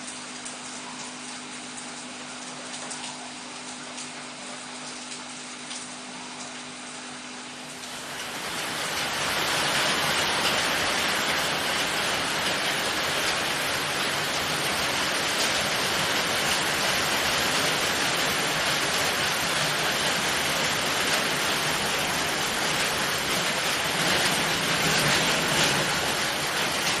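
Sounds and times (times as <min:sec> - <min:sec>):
rushing water: 0:07.8 - 0:27.0.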